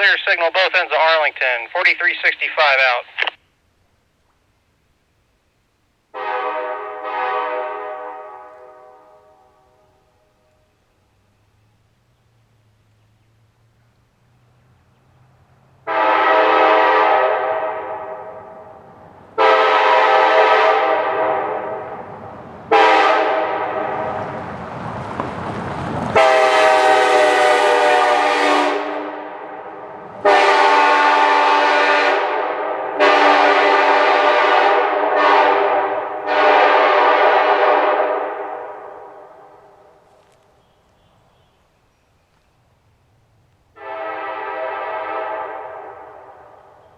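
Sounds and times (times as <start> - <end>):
train air horn blasts: 6.1 - 10.7, 15.8 - 24.2, 26.2 - 40.0, 43.7 - 46.8.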